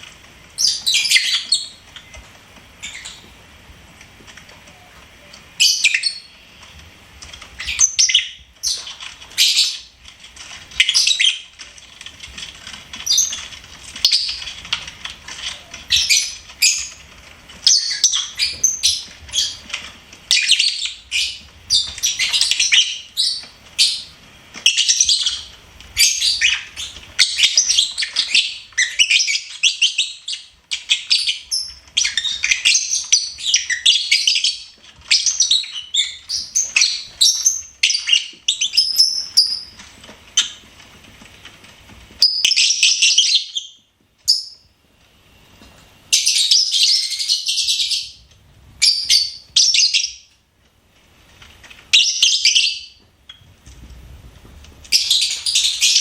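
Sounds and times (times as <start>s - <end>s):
lovebirds chirping: 0.5s - 3.5s, 4.5s - 6.6s, 7.4s - 10.0s, 10.6s - 11.8s, 12.9s - 40.7s, 42.2s - 44.7s, 46.0s - 50.4s, 51.9s - 53.4s, 54.8s - 56.0s.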